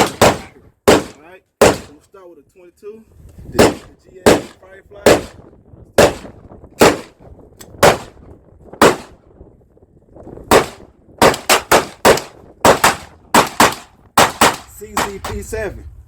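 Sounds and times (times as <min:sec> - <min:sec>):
pistol shots: 0:00.0 - 0:02.0, 0:03.6 - 0:05.4, 0:06.0 - 0:08.2, 0:08.8 - 0:09.2, 0:10.4 - 0:15.4.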